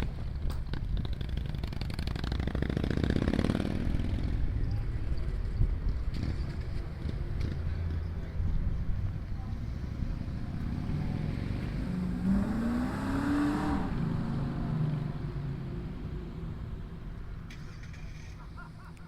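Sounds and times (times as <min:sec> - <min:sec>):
car engine revving: 0:10.5 - 0:15.8.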